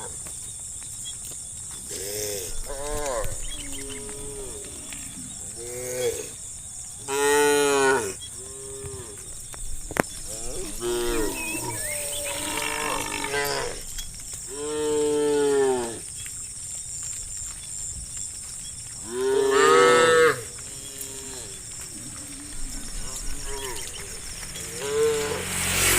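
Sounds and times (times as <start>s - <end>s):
cows mooing: 1.9s - 6.4s, 7.0s - 9.3s, 10.2s - 16.1s, 19.0s - 25.9s.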